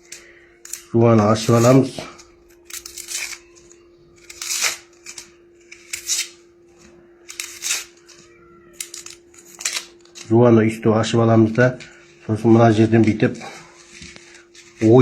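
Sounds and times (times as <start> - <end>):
knife cutting onion: 0.0 - 6.4, 7.2 - 8.2.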